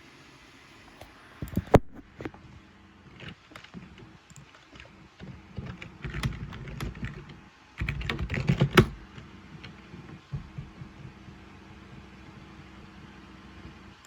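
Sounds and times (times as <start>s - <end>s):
computer keyboard typing: 3.1s - 12.1s.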